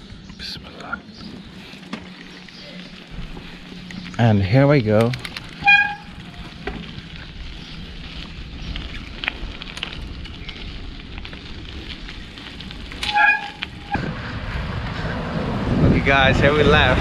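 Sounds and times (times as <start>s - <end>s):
road noise: 0.0s - 17.0s
small clicks and crackles: 0.2s - 14.0s
wind buffeting microphone: 3.0s - 17.0s
horn toot: 5.6s - 6.2s, 13.0s - 14.1s.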